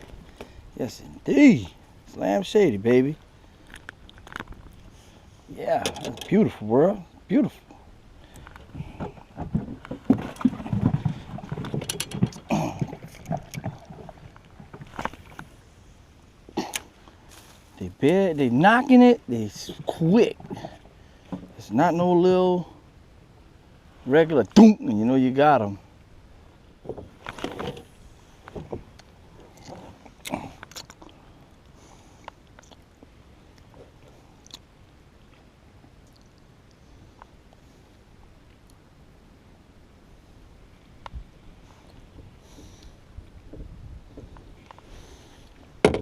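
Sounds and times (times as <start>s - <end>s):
fishing gear knocking and clicking: 5.8s - 6.4s, 9.0s - 13.9s
knocks and clatter on boat: 8.5s - 15.5s, 20.2s - 21.6s, 26.8s - 27.9s, 28.5s - 28.9s, 43.2s - 44.6s, 45.8s - 46.0s.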